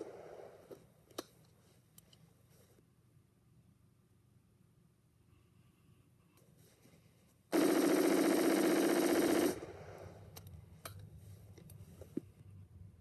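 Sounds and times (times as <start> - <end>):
rifle firing rapid shots: 7.5 - 10.1.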